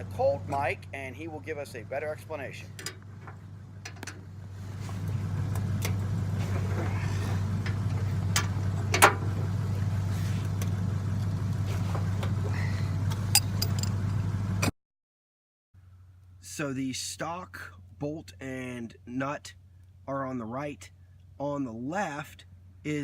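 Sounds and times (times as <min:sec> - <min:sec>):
vehicle engine idling: 0:00.0 - 0:14.7
metal tools clinking: 0:13.3 - 0:14.1.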